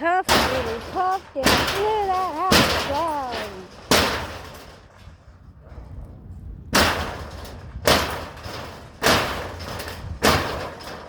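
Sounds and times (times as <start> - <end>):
heavy blows crashing against boards: 0.0 - 5.3, 6.7 - 11.0.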